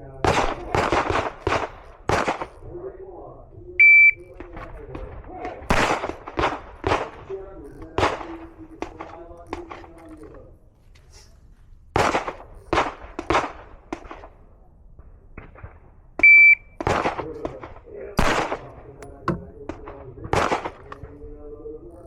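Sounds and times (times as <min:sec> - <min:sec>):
pistol shots: 0:00.1 - 0:02.6, 0:04.3 - 0:09.7, 0:11.9 - 0:14.4, 0:15.4 - 0:21.1
shot timer beep: 0:03.8 - 0:04.2, 0:16.2 - 0:16.8.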